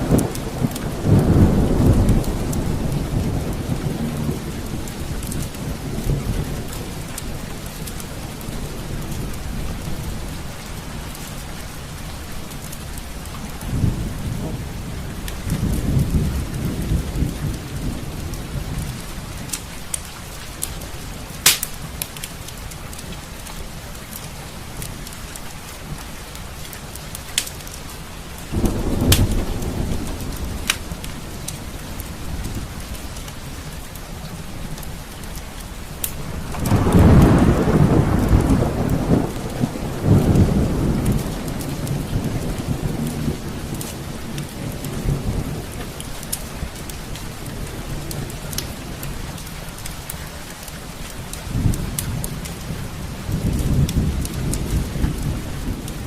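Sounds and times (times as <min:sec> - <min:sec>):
low rolling thunder: 0:00.0 - 0:10.6, 0:13.2 - 0:19.9, 0:28.4 - 0:35.0, 0:35.8 - 0:49.8, 0:51.4 - 0:56.0
steady rain: 0:00.0 - 0:56.0
fireplace fire crackling: 0:17.5 - 0:56.0.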